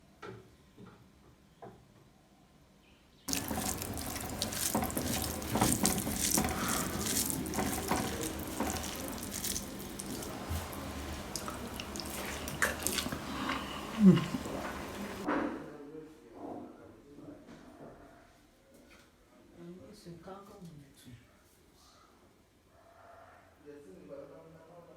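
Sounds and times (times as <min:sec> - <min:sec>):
tap water running into sink: 0:03.3 - 0:15.3.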